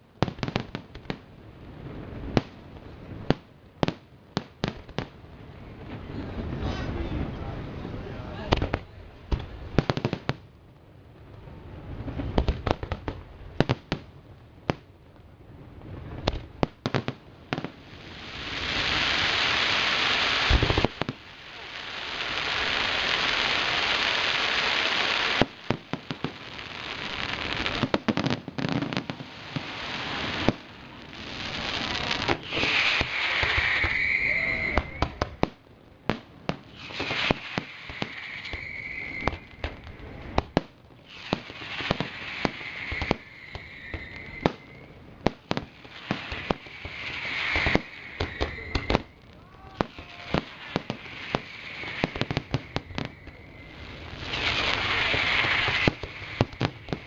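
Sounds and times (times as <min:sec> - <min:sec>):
firework crackling: 0:00.0 - 0:57.0
firework shells bursting: 0:23.9 - 0:35.6, 0:36.6 - 0:57.0
high firework whistle: 0:31.2 - 0:35.5, 0:36.7 - 0:40.4, 0:41.1 - 0:45.0, 0:45.9 - 0:57.0.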